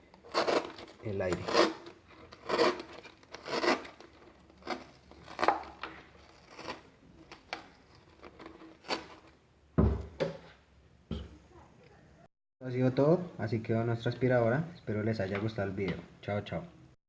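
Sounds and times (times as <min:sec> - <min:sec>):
heavy thump: 0:09.8 - 0:10.4.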